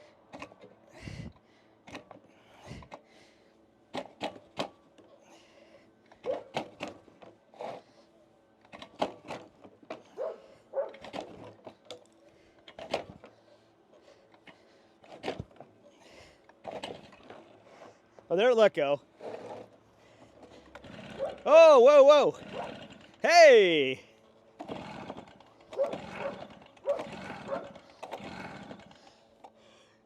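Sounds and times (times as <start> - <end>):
recoil starter rope pulls: 6.6 - 10.2, 10.9 - 18.0, 19.2 - 23.9, 24.6 - 29.9.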